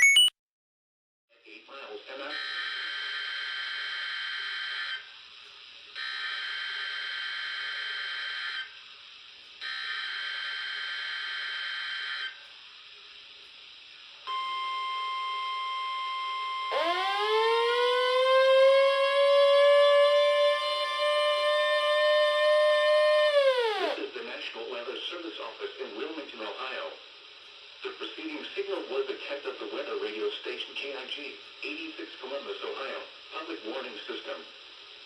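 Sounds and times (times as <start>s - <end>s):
steady high tone: 0.0s - 0.3s, 14.3s - 24.0s
siren-like alert alarm: 14.3s - 24.0s.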